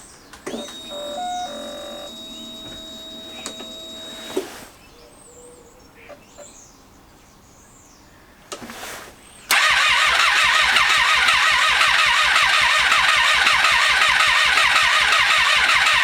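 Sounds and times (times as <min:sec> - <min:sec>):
fuel pump electric whine: 0:00.3 - 0:04.7, 0:09.5 - 0:16.0.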